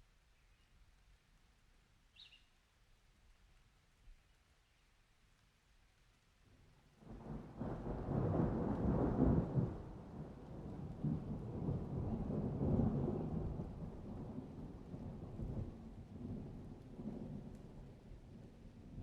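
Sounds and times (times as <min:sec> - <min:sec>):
rain falling: 0:04.3 - 0:19.0
thunder rumbling: 0:07.0 - 0:19.0.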